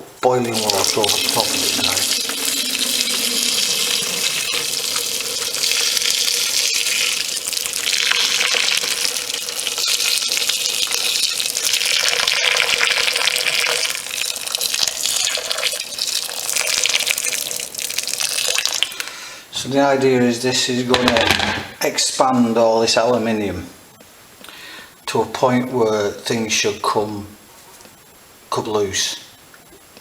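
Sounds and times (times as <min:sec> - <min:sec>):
water pouring and splashing on metal: 0:00.5 - 0:18.9.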